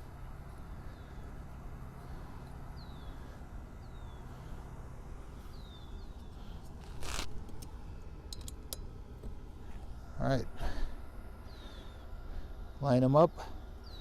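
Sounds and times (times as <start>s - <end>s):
small bird chirping: 5.4s - 7.2s.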